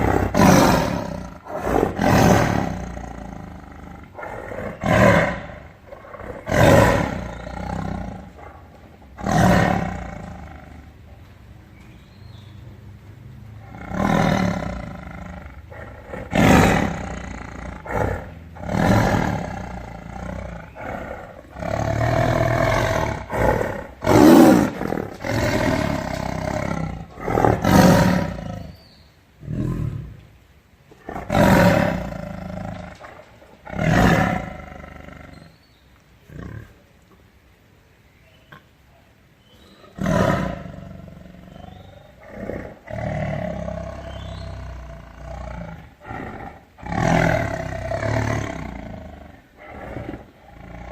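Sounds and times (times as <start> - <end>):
tiger roaring and growling: 0.0 - 11.2, 13.3 - 35.6, 39.8 - 50.9.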